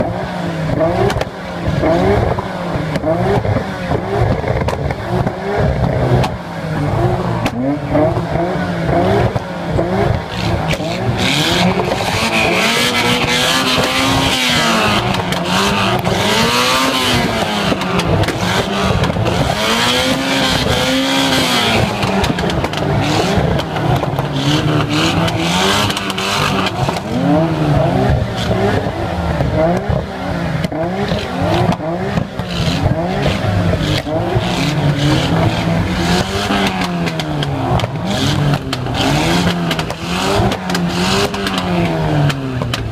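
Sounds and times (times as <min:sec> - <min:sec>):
car engine revving: 0:00.0 - 0:42.9.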